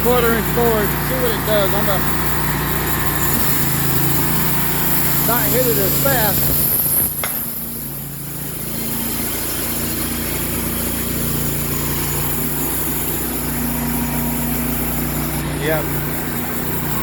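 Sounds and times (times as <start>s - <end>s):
gasoline engine running: 0.0s - 17.0s.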